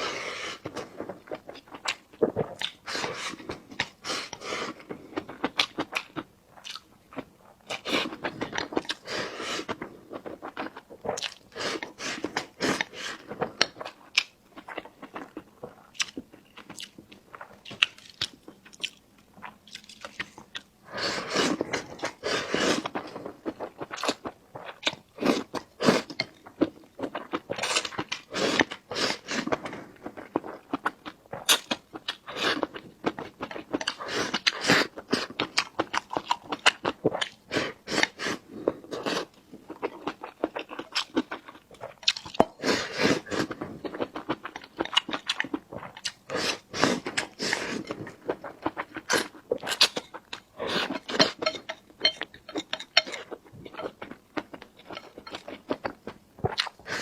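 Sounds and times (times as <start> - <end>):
person chewing food: 0.0 - 57.0.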